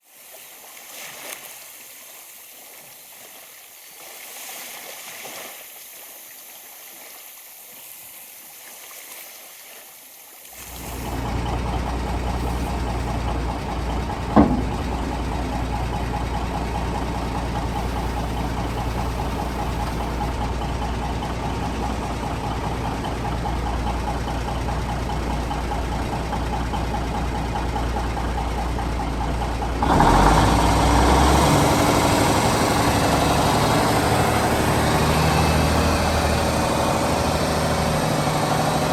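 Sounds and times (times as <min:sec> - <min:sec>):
diesel truck engine idling: 0:10.6 - 0:38.9.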